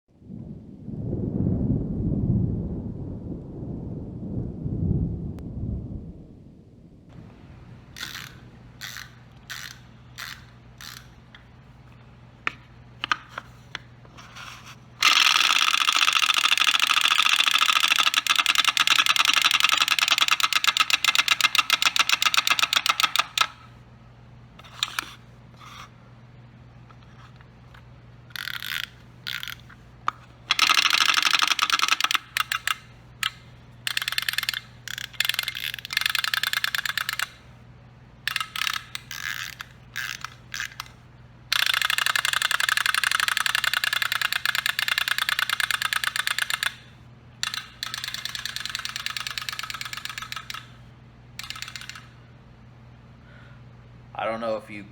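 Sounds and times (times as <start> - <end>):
wind-up toy plastic clatter: 8.0 - 11.2, 15.0 - 23.7, 24.6 - 25.2, 28.3 - 37.4, 38.2 - 50.8, 51.4 - 52.2.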